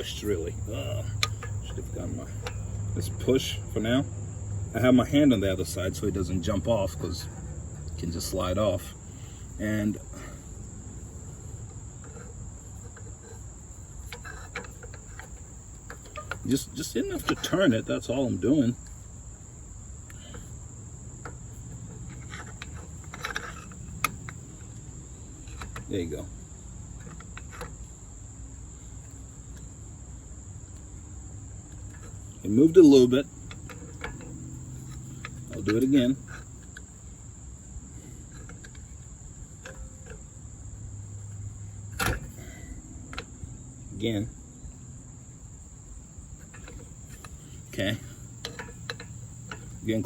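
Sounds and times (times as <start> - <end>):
crickets trilling: 0.0 - 50.0
metallic tool clicks and scraping: 0.6 - 2.7, 12.0 - 17.9, 21.2 - 24.4.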